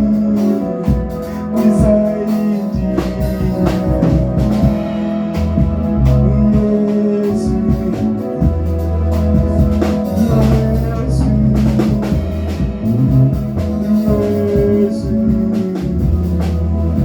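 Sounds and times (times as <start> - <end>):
deep bass line: 0.0 - 17.0
drum kit beating: 0.0 - 17.0
held chords: 0.0 - 17.0.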